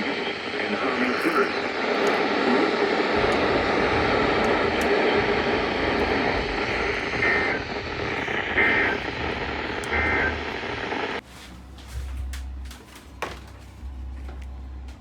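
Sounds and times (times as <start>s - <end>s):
buzzing data bursts: 0.0s - 11.2s
radio reception hiss: 0.0s - 11.2s.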